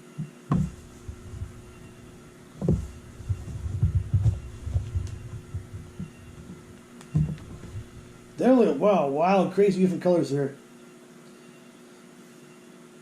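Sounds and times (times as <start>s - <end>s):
objects being handled thumping: 0.0s - 8.5s
faint steady hum: 0.0s - 13.0s
soft knocks: 0.2s - 8.4s.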